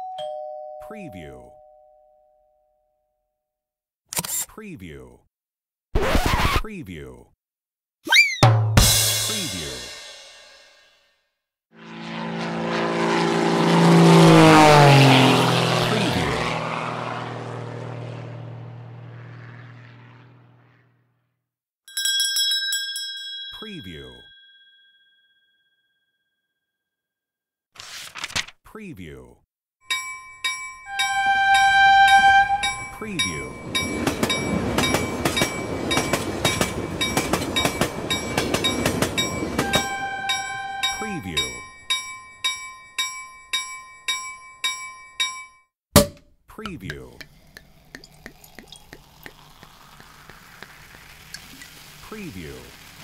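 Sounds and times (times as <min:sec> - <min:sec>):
motorboat passing by: 0:11.8 - 0:21.1, 0:47.7 - 0:53.0
steady ringing tone: 0:29.9 - 0:45.7
train wheels clicking over rail joints: 0:32.7 - 0:39.7.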